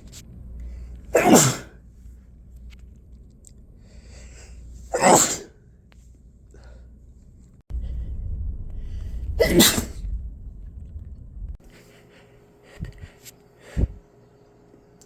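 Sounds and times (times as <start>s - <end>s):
steady low rumble: 0.0s - 4.9s, 5.7s - 11.7s, 12.8s - 14.0s
loud sneeze: 1.1s - 1.8s, 4.9s - 5.6s, 9.4s - 10.0s.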